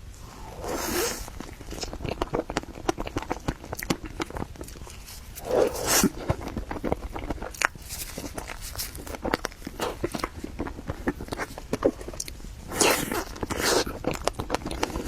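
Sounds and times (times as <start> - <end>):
person chewing cake: 0.3 - 15.0.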